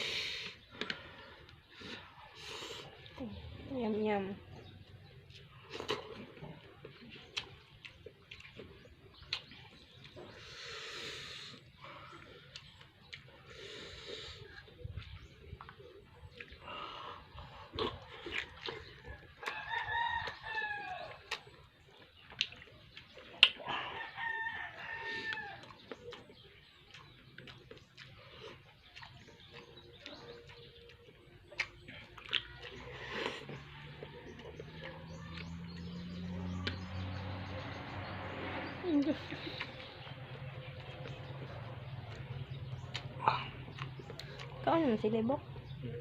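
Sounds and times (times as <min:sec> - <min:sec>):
rooster crowing: 0:19.4 - 0:21.2, 0:23.8 - 0:25.7.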